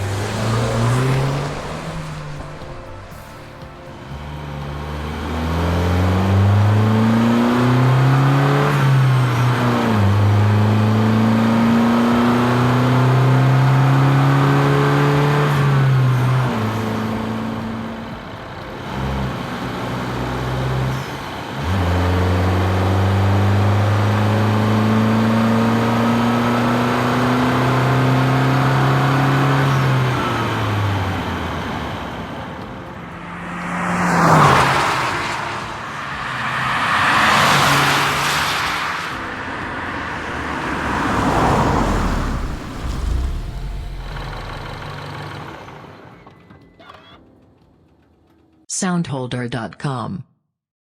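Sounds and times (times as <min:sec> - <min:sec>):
car engine accelerating through gears: 0:00.0 - 0:45.9.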